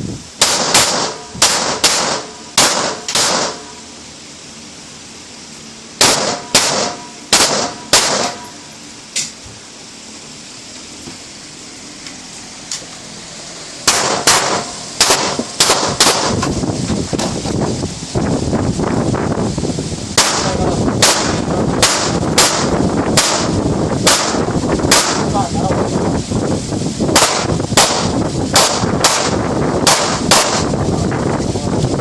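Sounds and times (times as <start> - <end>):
handgun shots indoors: 0.4 - 3.8, 6.0 - 8.6, 13.8 - 16.5, 20.2 - 23.5, 24.1 - 25.2, 27.2 - 30.7.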